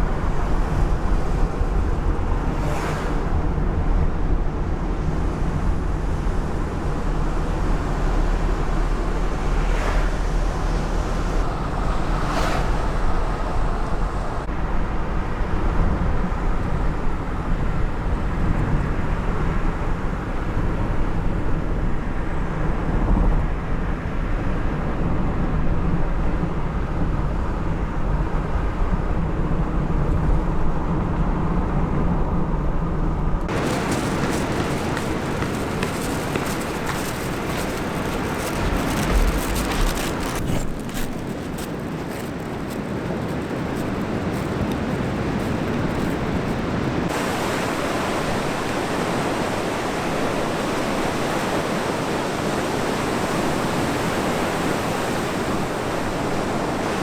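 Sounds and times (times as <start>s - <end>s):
wind buffeting the microphone: 33.3s - 57.0s
surf: 33.5s - 57.0s.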